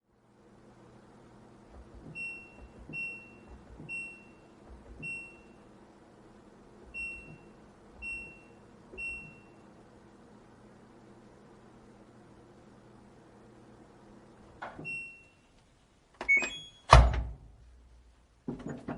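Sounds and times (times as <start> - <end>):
faint steady hum: 0.0 - 18.9
washing machine beeps: 1.7 - 5.7, 6.8 - 9.7, 14.8 - 15.5, 16.2 - 16.9.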